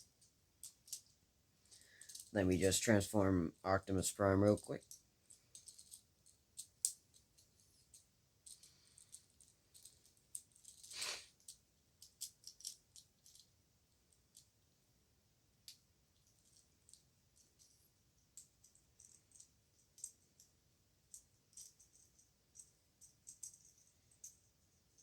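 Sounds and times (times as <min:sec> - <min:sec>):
plastic toy parts clicking: 0:00.6 - 0:01.1, 0:01.7 - 0:02.3, 0:04.6 - 0:06.0, 0:06.6 - 0:13.5.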